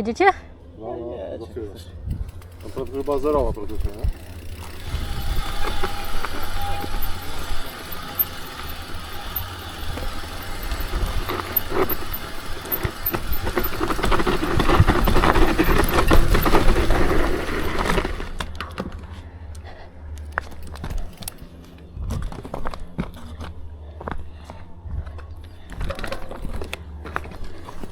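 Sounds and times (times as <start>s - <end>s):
wind rumble on microphone: 2.0s - 2.4s, 4.8s - 7.8s, 21.9s - 23.0s
bike rattling clicks and knocks: 2.0s - 27.9s
bike tyres rushing on dirt: 2.2s - 27.9s.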